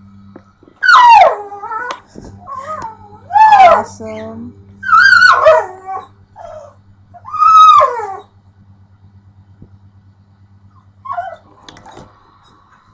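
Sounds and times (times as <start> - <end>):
faint low hum: 0.0 - 12.9
dog whining and howling: 0.8 - 8.4, 10.8 - 12.0.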